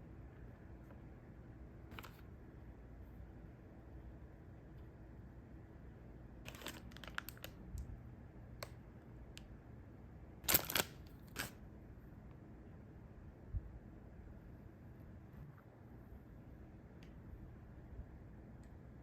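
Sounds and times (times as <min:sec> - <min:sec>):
snack packaging crinkling: 0:06.5 - 0:07.6, 0:10.5 - 0:11.6.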